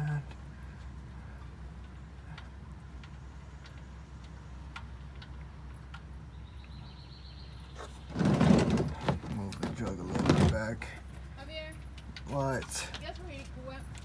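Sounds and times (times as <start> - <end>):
faint irregular ticks: 0.0 - 6.8.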